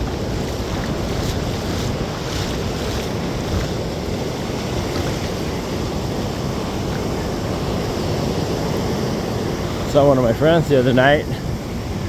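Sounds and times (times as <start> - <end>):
ocean surf washing on beach: 0.0 - 12.0
wind rumbling on microphone: 0.0 - 12.0.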